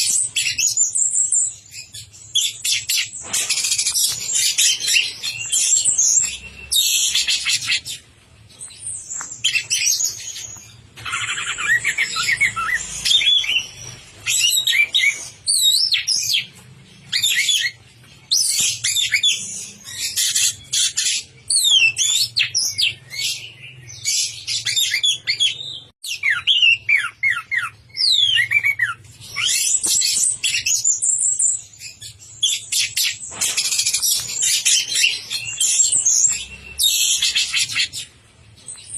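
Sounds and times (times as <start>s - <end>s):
thrush singing varied whistles: 0.0s - 8.0s, 11.0s - 16.5s, 21.5s - 38.1s.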